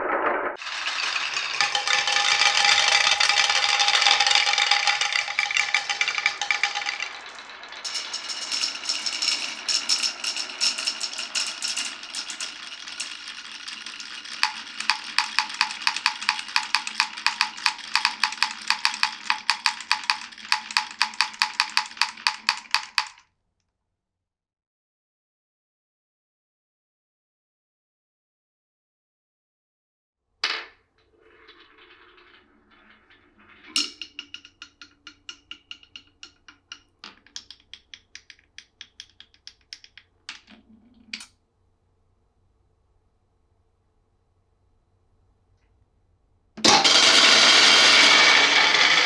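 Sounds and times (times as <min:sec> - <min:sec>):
marbles rolling on wooden track: 0:00.6 - 0:23.2, 0:30.4 - 0:41.3, 0:46.6 - 0:49.0
sharp wooden clicks: 0:14.4 - 0:23.2, 0:34.2 - 0:40.5.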